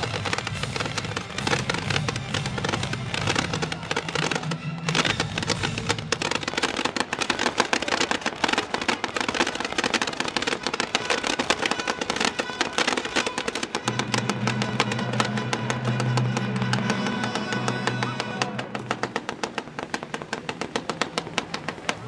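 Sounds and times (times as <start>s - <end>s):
music: 0.0s - 6.1s, 13.8s - 19.0s
fireworks crackling and popping: 0.0s - 22.0s
low sustained note: 13.8s - 19.2s.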